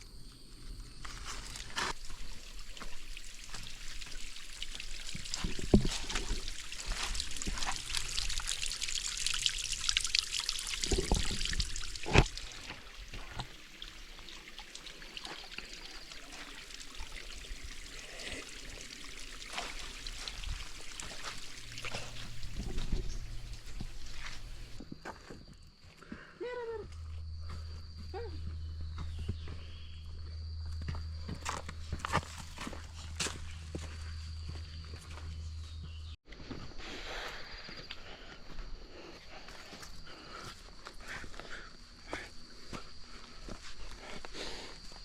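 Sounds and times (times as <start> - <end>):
water trickling and pouring: 1.4 - 24.8.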